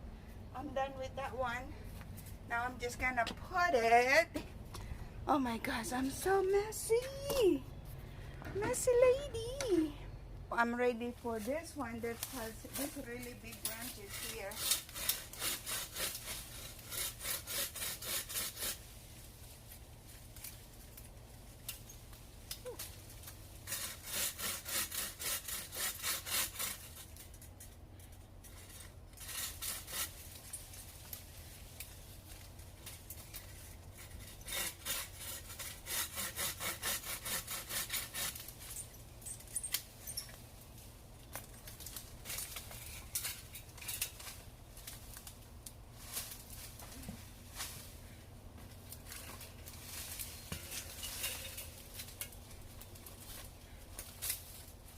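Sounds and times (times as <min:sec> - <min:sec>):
hand saw cutting branch: 0:11.4 - 0:19.1, 0:22.6 - 0:27.3, 0:28.5 - 0:31.2, 0:32.8 - 0:38.8.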